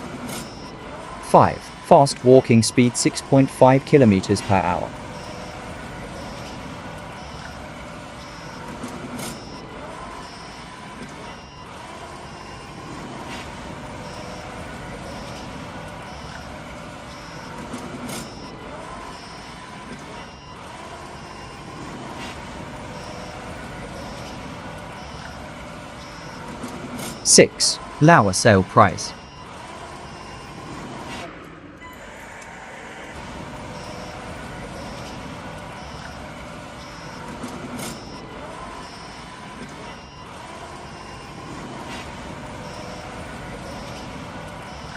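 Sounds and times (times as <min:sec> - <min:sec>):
short high double beep: 0:01.3 - 0:05.5, 0:27.1 - 0:29.3.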